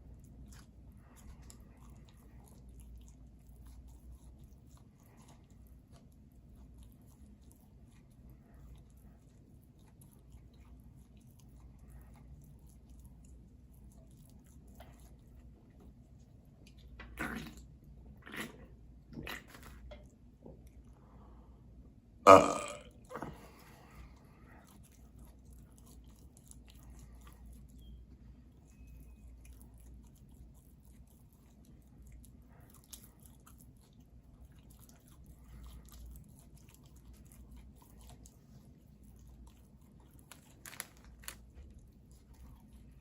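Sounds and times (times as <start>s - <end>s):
loud human burp: 22.2s - 23.3s.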